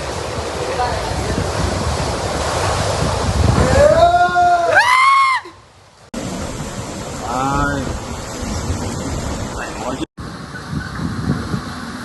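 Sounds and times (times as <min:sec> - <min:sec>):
wind buffeting microphone: 0:00.0 - 0:04.8, 0:06.2 - 0:12.0
floodwater rushing: 0:00.0 - 0:12.0.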